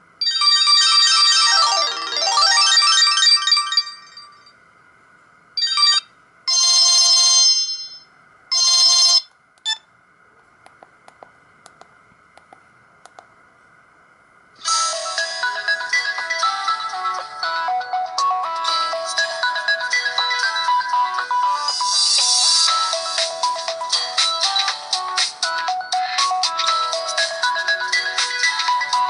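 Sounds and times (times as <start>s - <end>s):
mobile phone ringtone melody: 0.2s - 4.5s, 5.6s - 9.8s, 14.7s - 21.8s.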